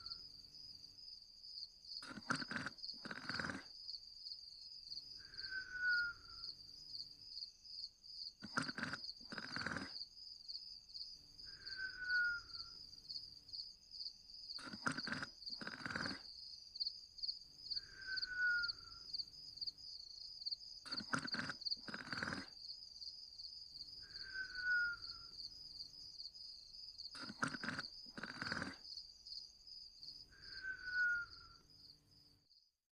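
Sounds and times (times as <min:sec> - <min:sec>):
crickets chirping: 0:00.0 - 0:32.7
whistling breath: 0:05.2 - 0:06.6, 0:11.4 - 0:12.8, 0:17.8 - 0:19.1, 0:24.0 - 0:25.4, 0:30.3 - 0:31.7
person snoring: 0:27.2 - 0:28.8.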